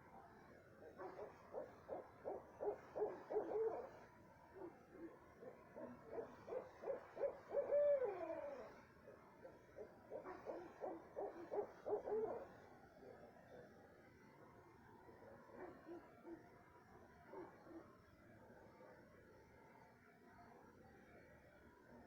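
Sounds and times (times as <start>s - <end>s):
owls hooting: 6.8s - 8.7s.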